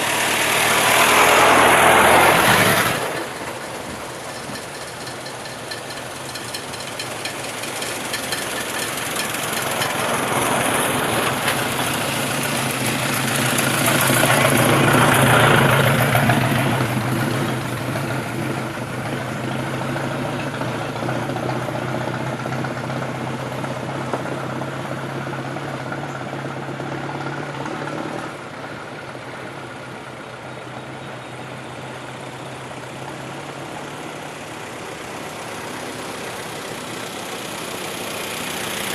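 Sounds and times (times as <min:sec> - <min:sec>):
car driving past: 0:00.0 - 0:05.0
steady engine drone: 0:00.0 - 0:38.9.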